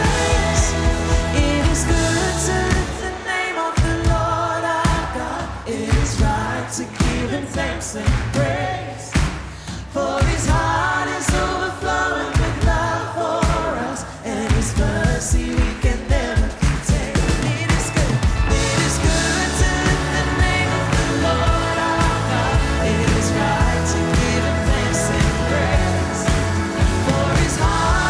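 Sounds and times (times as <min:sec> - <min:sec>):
band playing: 0:00.0 - 0:03.1, 0:17.3 - 0:28.0
steady drum beat: 0:00.0 - 0:28.0
voices singing: 0:00.0 - 0:28.0.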